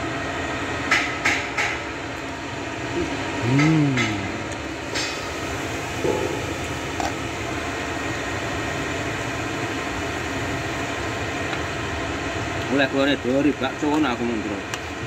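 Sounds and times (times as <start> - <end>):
person humming: 3.0 - 4.6.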